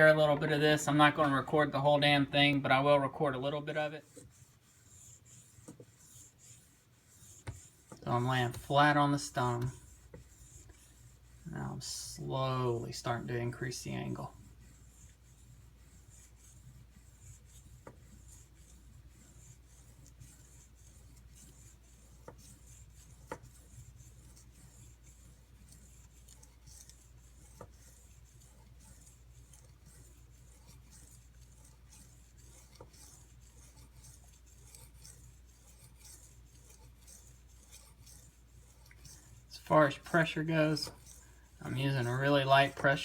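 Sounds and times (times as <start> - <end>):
knife rubbing on sharpening stone: 18.7 - 43.0.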